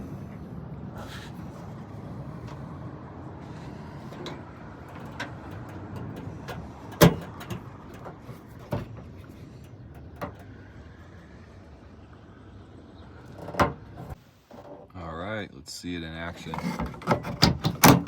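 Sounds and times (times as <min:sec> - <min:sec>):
clicks and knocks of parts: 0:04.0 - 0:10.6, 0:16.4 - 0:18.0.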